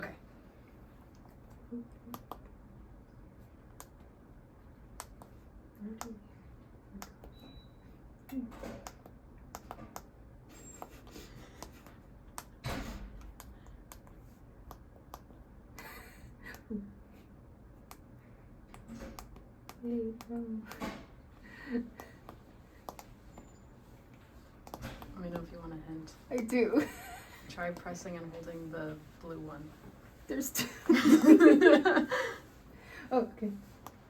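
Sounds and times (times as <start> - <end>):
control panel buttons clicking: 22.0 - 23.1, 24.6 - 25.5.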